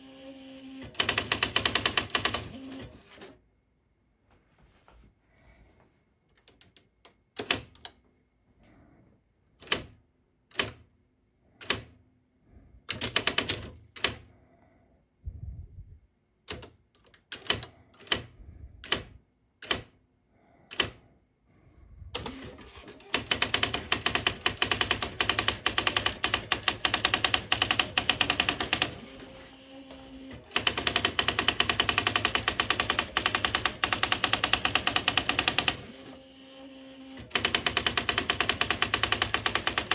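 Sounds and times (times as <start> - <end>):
typewriter strikes: 37.3 - 39.9.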